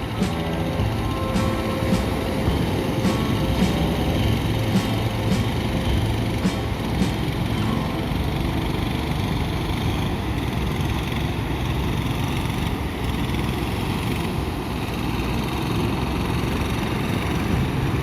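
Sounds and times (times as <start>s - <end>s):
ocean surf breaking: 0.0s - 13.0s.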